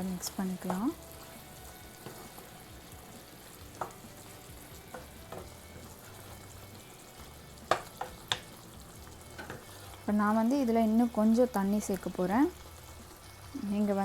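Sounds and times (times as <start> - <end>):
chicken sizzling in a pan: 0.0 - 14.0
spoon knocking against pan: 3.7 - 4.1, 4.8 - 5.9, 7.6 - 8.6.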